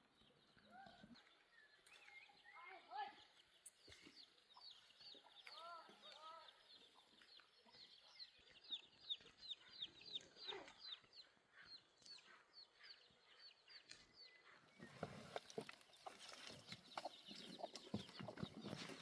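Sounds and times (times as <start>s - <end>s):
chickens peeping: 6.4s - 19.0s.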